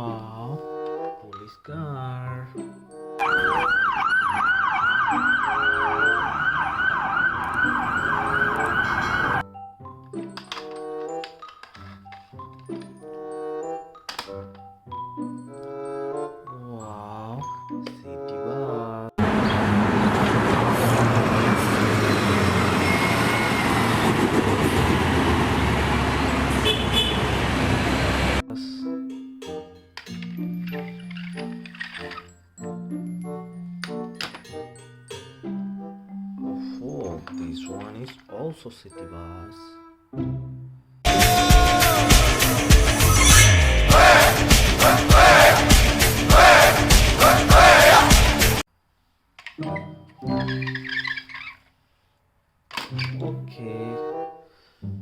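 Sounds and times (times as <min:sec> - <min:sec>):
police siren wailing: 0:03.2 - 0:09.4
traffic noise: 0:03.2 - 0:09.4, 0:19.2 - 0:28.4
bus engine rumbling: 0:19.2 - 0:28.4, 0:41.1 - 0:48.6.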